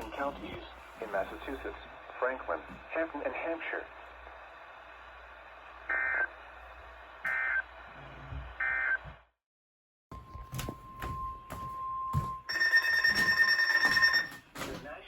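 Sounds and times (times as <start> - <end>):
radio hiss: 0.0 - 7.6.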